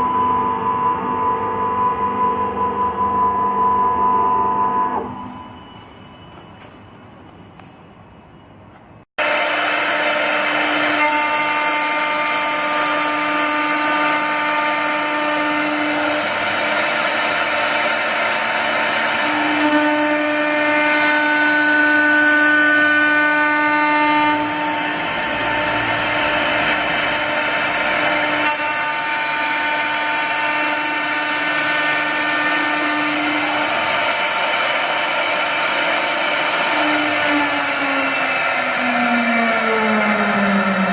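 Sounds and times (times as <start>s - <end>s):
spindle high whine: 0.0s - 9.6s
rasping wood cutting: 9.2s - 40.9s.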